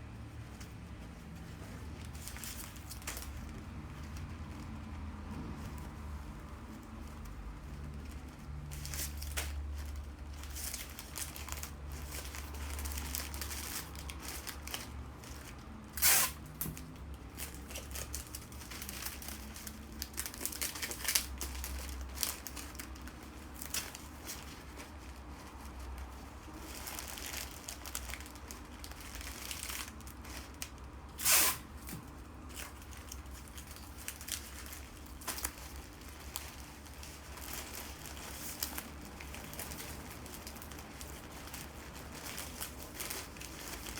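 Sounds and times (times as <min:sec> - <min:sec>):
wrapping material crinkling: 0:00.0 - 0:43.9
tearing sounds: 0:15.8 - 0:16.8, 0:29.1 - 0:35.9.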